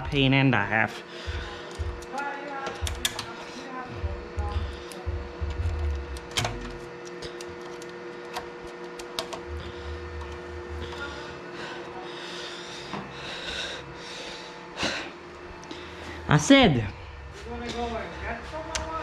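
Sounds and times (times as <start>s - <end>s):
faint steady hum: 0.0s - 19.0s
connectors clicking and rattling: 1.6s - 3.4s, 4.9s - 11.1s.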